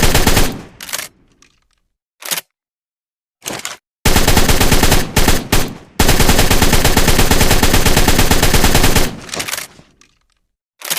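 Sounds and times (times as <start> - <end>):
assault rifle automatic fire: 0.0 - 0.8, 4.1 - 9.3.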